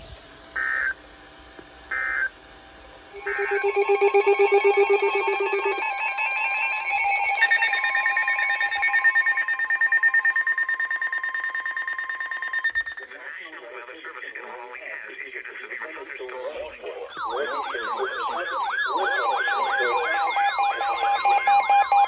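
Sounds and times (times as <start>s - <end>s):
multi-tone electronic alert alarm: 3.2s - 13.1s, 17.1s - 22.0s
short electronic data bursts: 3.2s - 13.1s.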